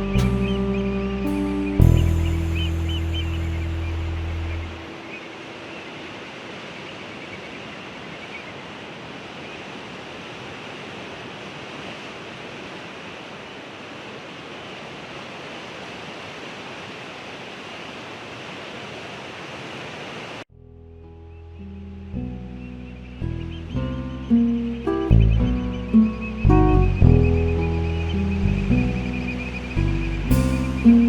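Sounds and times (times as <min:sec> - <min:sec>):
waves breaking: 0:00.0 - 0:20.5.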